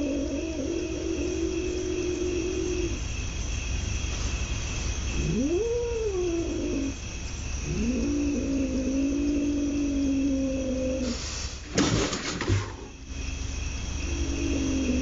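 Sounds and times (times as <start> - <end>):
steady low hum: 0.0 - 15.0
cat yowling: 5.1 - 7.0.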